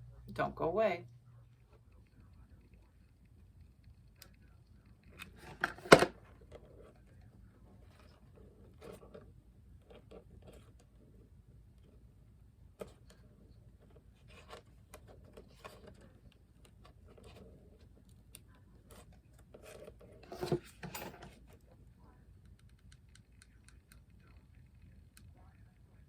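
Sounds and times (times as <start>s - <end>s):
clatter of crafting materials: 12.8s - 21.8s.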